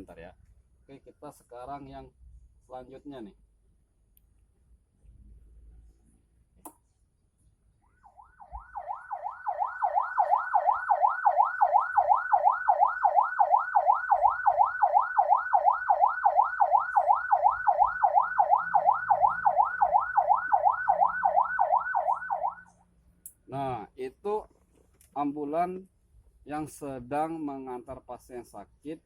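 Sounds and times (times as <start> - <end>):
ambulance siren fast yelp: 7.9 - 22.7.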